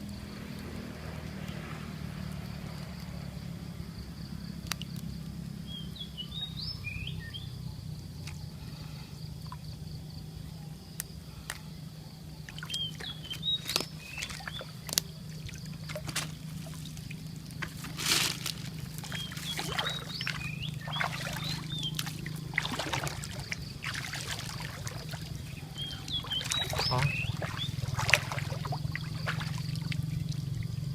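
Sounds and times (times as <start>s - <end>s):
steady low hum: 0.0s - 30.9s
water sloshing and splashing: 8.1s - 10.2s, 11.0s - 30.9s
short high chirping calls: 19.1s - 23.1s, 24.9s - 28.5s.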